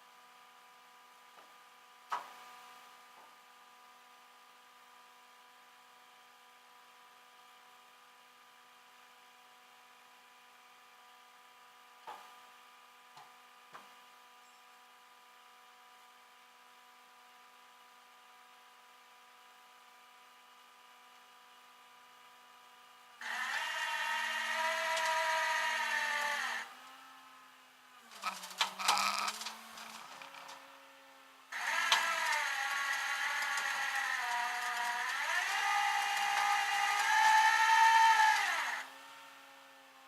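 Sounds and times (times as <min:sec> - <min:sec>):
power tool motor whining: 0:23.2 - 0:27.1, 0:28.0 - 0:30.7, 0:31.5 - 0:39.0
sharp clicks and clatter: 0:28.1 - 0:30.6, 0:31.6 - 0:37.6.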